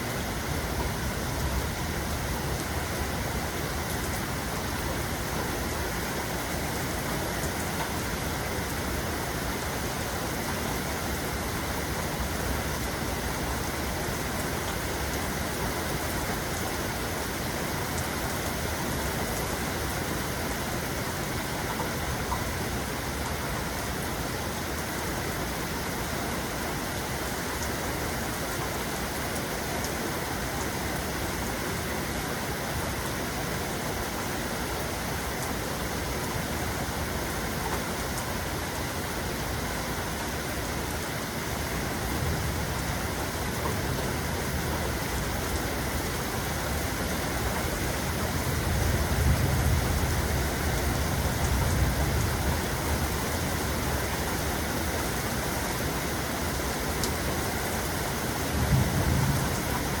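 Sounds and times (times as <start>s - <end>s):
steady rain: 0.0s - 60.0s
rolling thunder: 42.1s - 45.3s, 48.4s - 53.1s, 58.6s - 60.0s.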